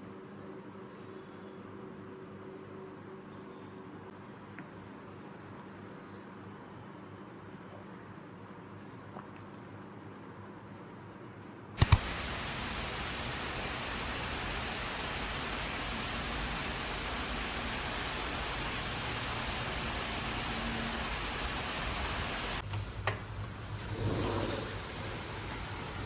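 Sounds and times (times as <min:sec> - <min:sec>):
sharp clicks: 0:11.8 - 0:17.1
steady rain hiss: 0:11.8 - 0:26.0.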